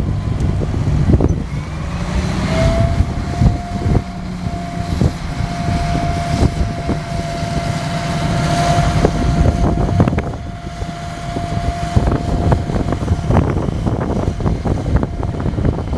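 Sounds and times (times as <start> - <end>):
machinery clanks and rattles: 0.0 - 15.9
steady whine: 0.0 - 15.9
tractor running under load: 0.0 - 15.9
wind buffeting microphone: 0.0 - 15.9.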